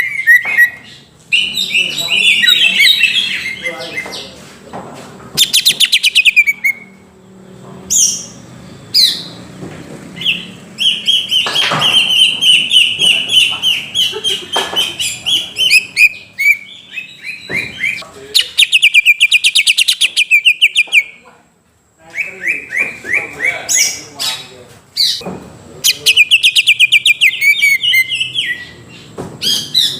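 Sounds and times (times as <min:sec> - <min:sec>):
bird singing fast trills: 0:00.0 - 0:04.2, 0:05.4 - 0:09.5, 0:10.2 - 0:21.2, 0:25.8 - 0:29.9.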